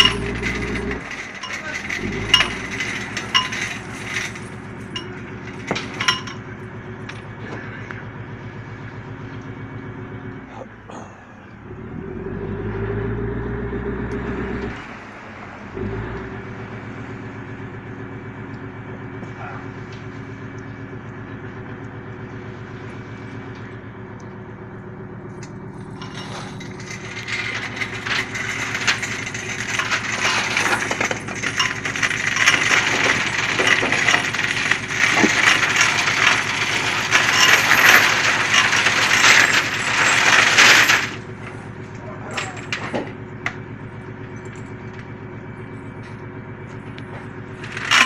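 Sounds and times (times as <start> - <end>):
loud clattering rattle: 0.0 - 7.3, 25.8 - 43.2, 47.5 - 48.0.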